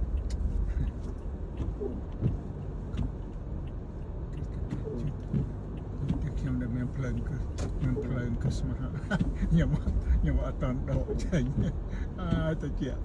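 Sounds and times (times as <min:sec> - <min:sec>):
tyres and engine rumbling: 0:00.0 - 0:13.0
faint ticks: 0:00.1 - 0:08.6.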